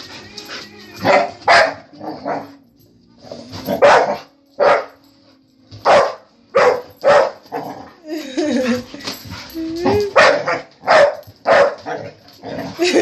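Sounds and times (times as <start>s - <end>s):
dog barking: 1.0s - 2.5s, 3.7s - 5.0s, 5.8s - 7.4s, 10.2s - 12.1s.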